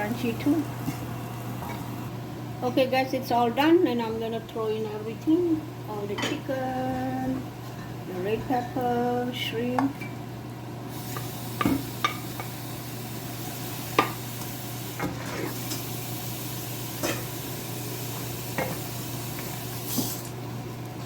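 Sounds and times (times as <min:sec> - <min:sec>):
noodles sizzling in a pan: 0:10.9 - 0:20.4.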